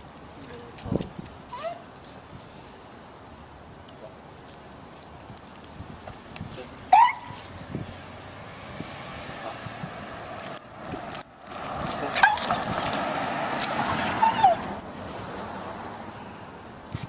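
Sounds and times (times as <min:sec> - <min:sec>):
dog whining and yelping: 0:01.5 - 0:01.9, 0:06.9 - 0:07.5, 0:13.9 - 0:14.8.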